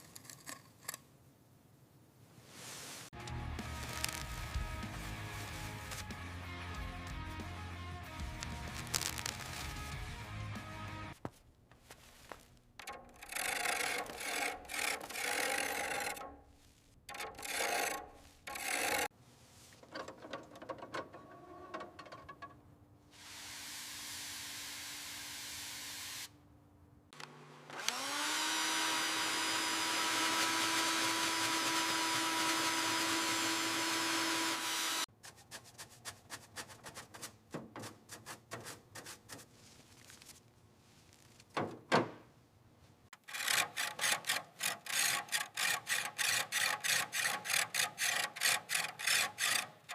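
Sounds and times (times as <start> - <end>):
hand scraping and rubbing: 2.2 - 6.2, 8.4 - 10.0, 11.1 - 22.5, 35.1 - 41.6
small electric tool spinning: 12.8 - 16.3, 17.1 - 19.1, 23.3 - 26.3, 27.7 - 35.1, 43.2 - 49.9.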